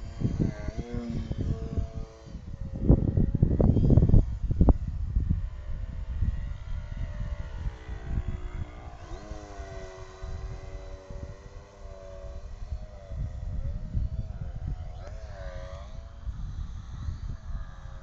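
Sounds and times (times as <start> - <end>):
model airplane motor droning: 0.0 - 18.0
wind buffeting microphone: 0.0 - 18.0.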